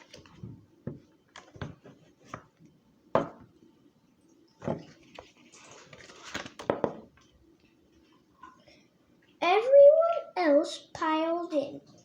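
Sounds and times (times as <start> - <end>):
page turning rustle: 0.0 - 0.4, 4.8 - 7.0.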